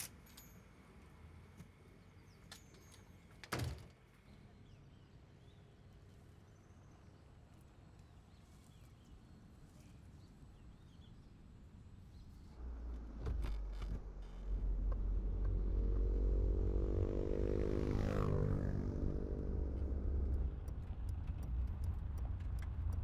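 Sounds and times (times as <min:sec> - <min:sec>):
vehicle driving past: 0:12.6 - 0:23.0.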